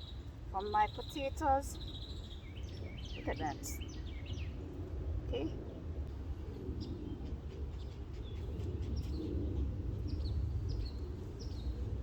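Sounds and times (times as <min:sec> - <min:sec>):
small birds chirping: 0:00.0 - 0:04.6.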